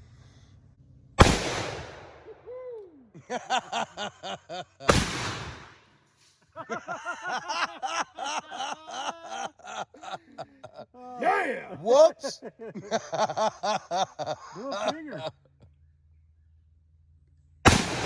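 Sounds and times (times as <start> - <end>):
revolver shots with echo: 1.2 - 2.3, 4.9 - 5.8, 17.7 - 18.0
voices exclaiming: 6.6 - 15.3.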